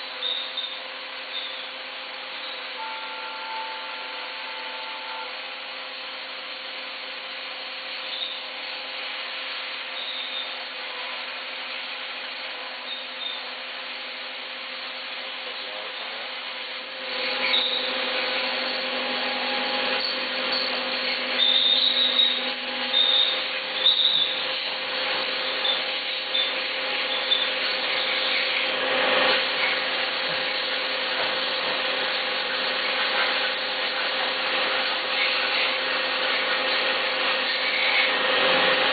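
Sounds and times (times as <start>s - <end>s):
milling machine whining: 0.0s - 38.9s
short high squeaks: 0.2s - 1.7s, 8.1s - 8.4s, 10.0s - 10.6s, 12.9s - 13.4s, 17.1s - 24.6s, 25.4s - 28.6s.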